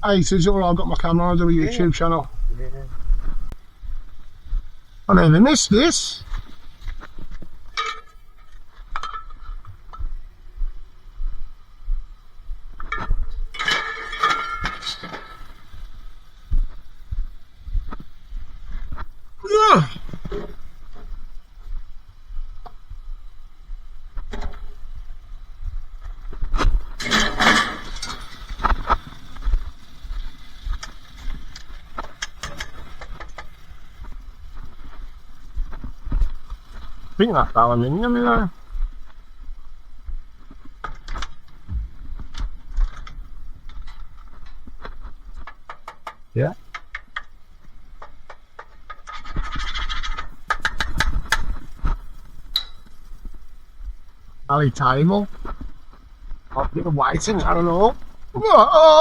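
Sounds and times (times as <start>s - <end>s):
metal rattle: 12.9s - 15.6s, 27.0s - 29.6s
scrap metal clanking: 13.6s - 15.6s, 27.0s - 29.0s.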